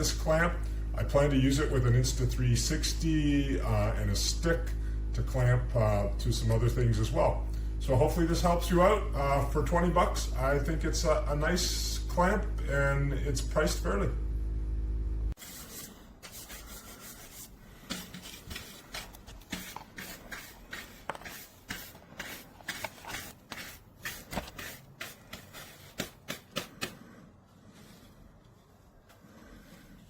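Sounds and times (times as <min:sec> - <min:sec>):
loud low hum: 0:00.0 - 0:15.4.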